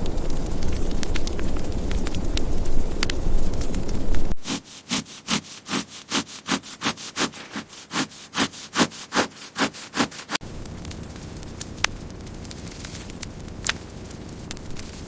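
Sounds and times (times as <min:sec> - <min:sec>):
low rushing noise: 0:00.0 - 0:04.4
rasping strokes on wood: 0:04.4 - 0:10.4.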